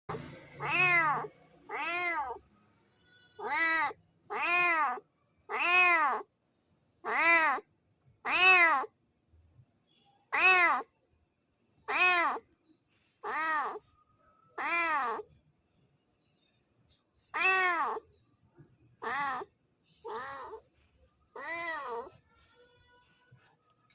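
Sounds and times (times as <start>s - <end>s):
cat meowing: 0.1s - 2.4s, 3.4s - 6.3s, 7.1s - 8.9s, 10.3s - 10.9s, 11.9s - 12.4s, 13.2s - 13.8s, 14.6s - 15.3s, 17.3s - 18.0s, 19.0s - 20.6s, 21.4s - 22.2s.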